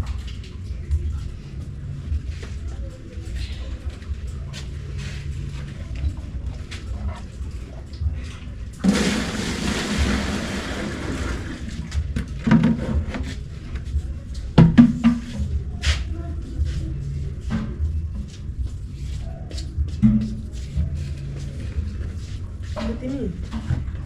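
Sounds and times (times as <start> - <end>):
water pouring and splashing: 6.3 - 13.4
container being set down: 8.8 - 11.4.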